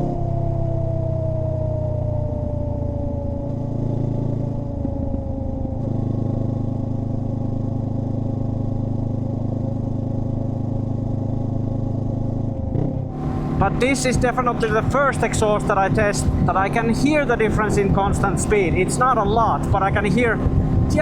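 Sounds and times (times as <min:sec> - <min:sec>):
whine falling in pitch: 0:00.0 - 0:09.2
motorcycle engine cruising: 0:00.0 - 0:21.0.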